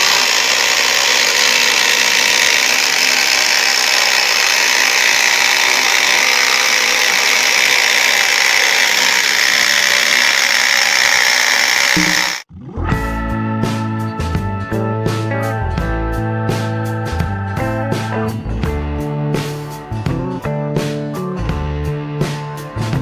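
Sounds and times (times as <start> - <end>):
electric jigsaw sawing wood: 0.0 - 12.5.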